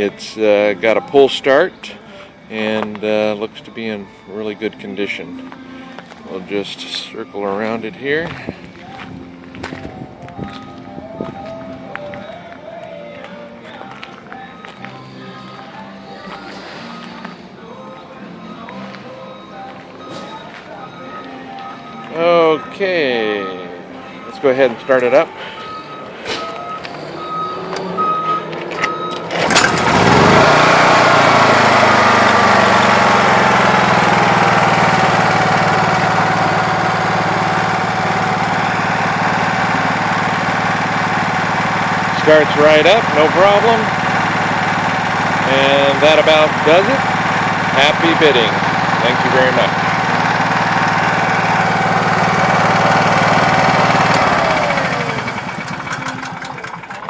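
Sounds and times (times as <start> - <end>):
engine whine: 0.8 - 57.0
reversing alarm beeping: 18.0 - 33.8
generator engine pull-started: 24.9 - 57.0.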